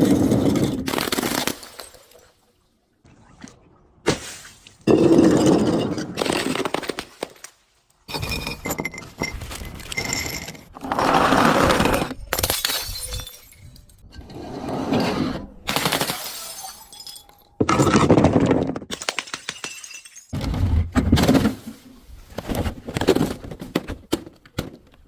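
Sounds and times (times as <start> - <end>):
glass crushing and shattering: 12.2 - 14.2, 15.7 - 20.4.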